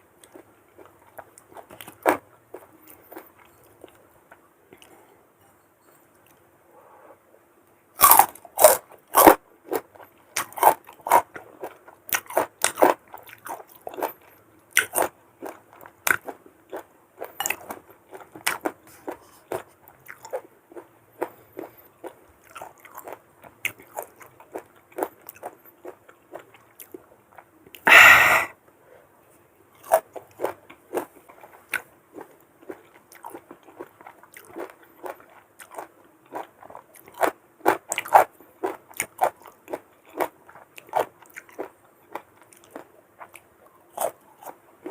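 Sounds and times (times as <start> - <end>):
crunchy bites into mango: 8.0 - 9.4
close-up chewing: 8.0 - 27.9, 29.7 - 44.9.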